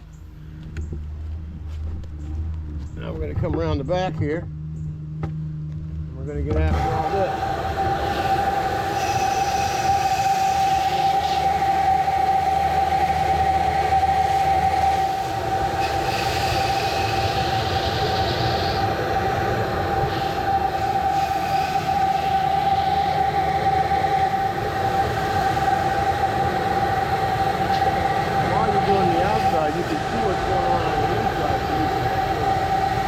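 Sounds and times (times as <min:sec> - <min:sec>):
pressure washer whine: 0:06.3 - 0:33.0
water spray hissing: 0:06.8 - 0:33.0.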